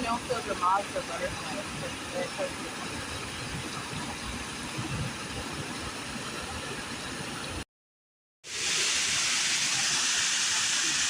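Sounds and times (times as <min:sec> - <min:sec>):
rushing noise with low rumble: 0:00.2 - 0:07.6
waterfall rushing: 0:08.5 - 0:11.0.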